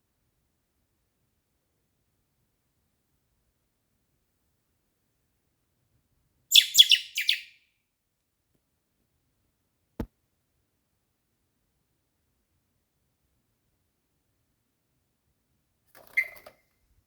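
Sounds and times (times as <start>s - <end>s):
fledgling bird chirping: 6.5s - 7.6s, 16.1s - 16.5s.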